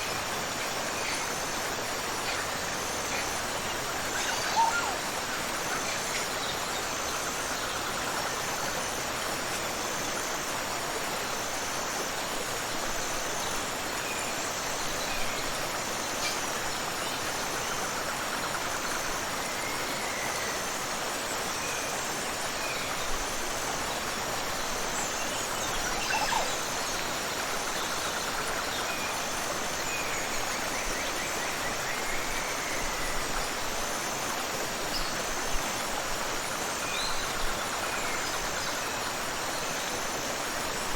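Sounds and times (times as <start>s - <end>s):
waterfall and river rushing: 0.0s - 40.9s.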